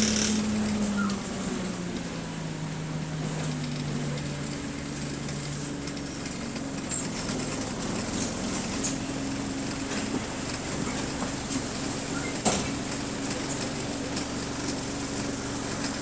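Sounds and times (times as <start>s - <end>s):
bus body rattling: 0.0s - 16.0s
bus engine humming: 0.0s - 16.0s.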